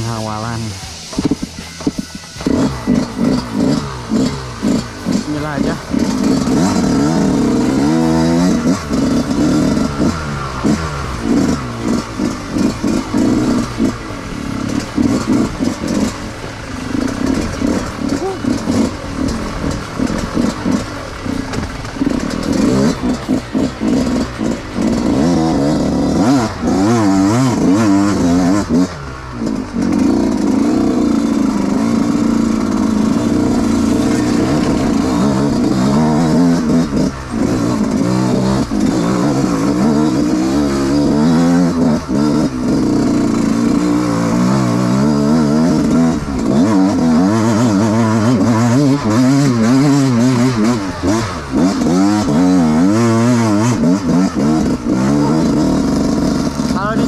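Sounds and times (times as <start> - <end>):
dirt bike engine revving: 0.0 - 57.0.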